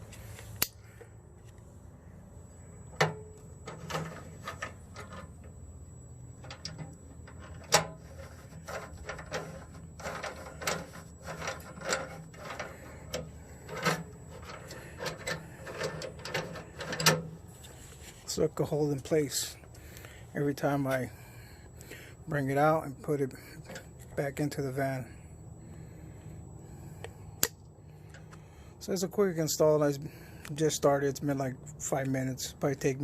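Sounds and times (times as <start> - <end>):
faint low hum: 0.0 - 33.0
clatter and rubbing: 6.4 - 18.3.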